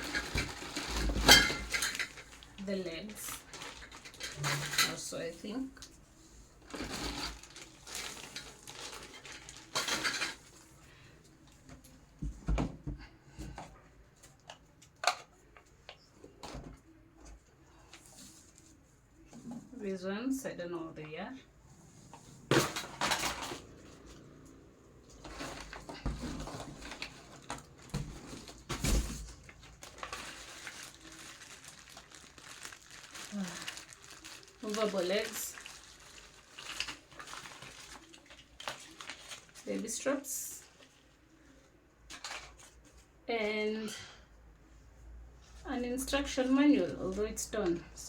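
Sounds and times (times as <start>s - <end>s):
packaging rustling: 0.0s - 5.0s, 6.6s - 10.8s, 22.4s - 39.8s.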